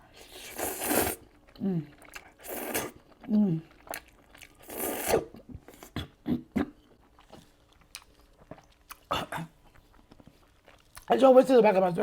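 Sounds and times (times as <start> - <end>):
chewing with wet mouth clicks: 1.3 - 4.7, 7.0 - 11.1.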